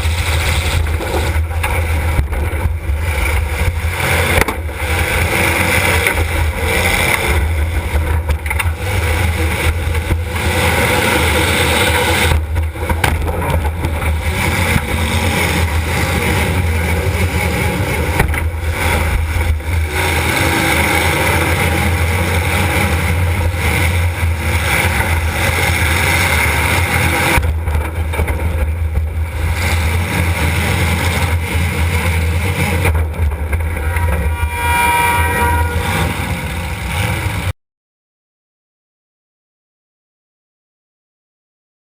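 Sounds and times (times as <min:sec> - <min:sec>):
loud car engine rumbling: 0:00.0 - 0:37.5.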